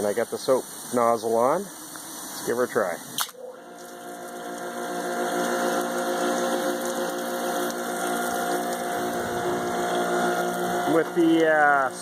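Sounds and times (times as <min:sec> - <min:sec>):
hiss of spray: 0:00.0 - 0:03.2
pressure washer motor humming: 0:00.0 - 0:12.0.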